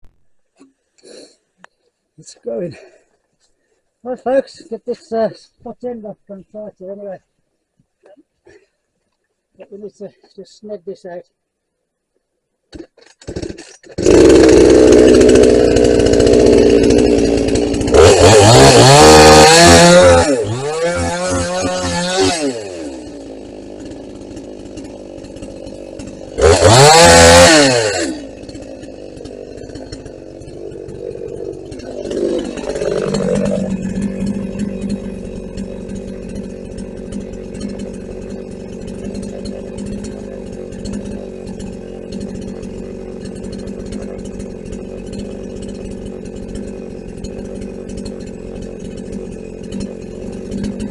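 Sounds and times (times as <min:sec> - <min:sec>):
chainsaw revving: 0:01.0 - 0:01.4, 0:12.7 - 0:50.9.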